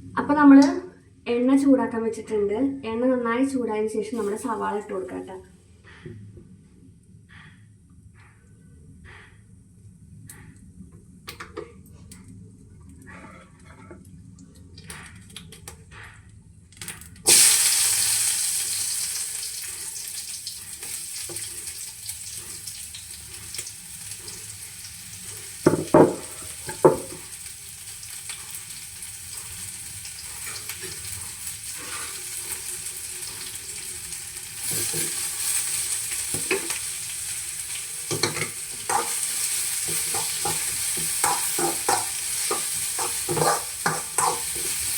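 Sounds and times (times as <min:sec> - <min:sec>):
onions sizzling in hot oil: 0:17.3 - 0:44.9
knocks against pan: 0:25.7 - 0:27.2.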